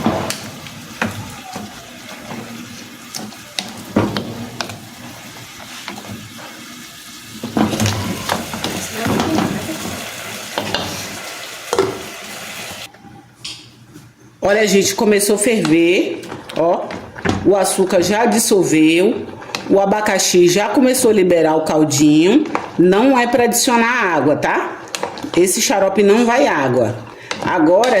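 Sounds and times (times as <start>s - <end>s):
spoon knocking and scraping a pan: 0.0s - 6.7s, 7.4s - 12.2s, 15.5s - 20.2s, 24.9s - 28.0s
fruit sizzling in sugar: 0.0s - 12.9s.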